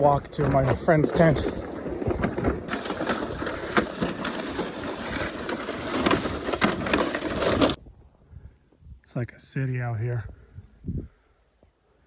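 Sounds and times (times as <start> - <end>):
footsteps crunching through snow: 0.0 - 7.8.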